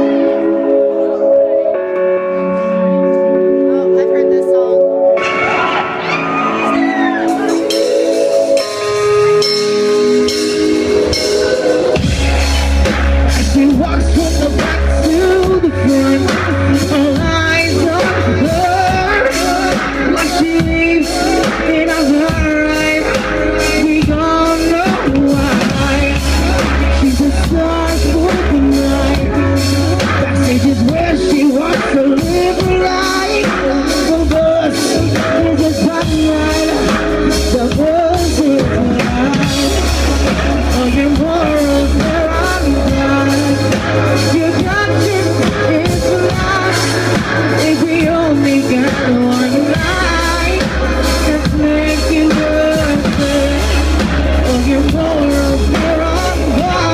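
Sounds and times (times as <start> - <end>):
heavy bass: 0.0 - 56.9
drum beat: 9.9 - 56.9
male lead vocal singing: 12.8 - 56.9.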